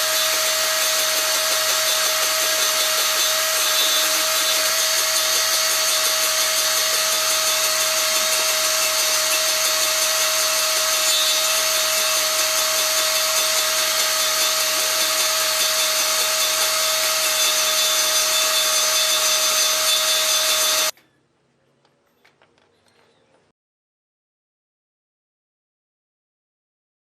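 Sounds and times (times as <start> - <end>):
table saw cutting wood: 0.0 - 20.9.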